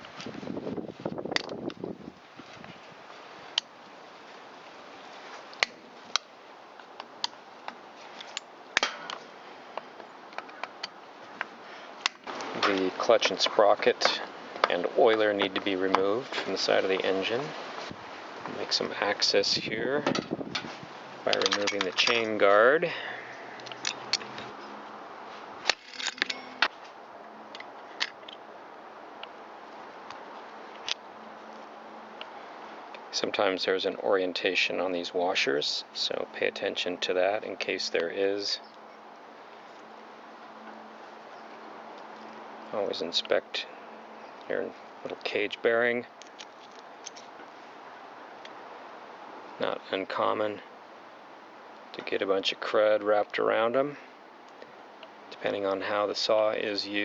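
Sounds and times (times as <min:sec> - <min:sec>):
hand tools clicking on metal parts: 0:21.3 - 0:22.4, 0:25.7 - 0:26.7.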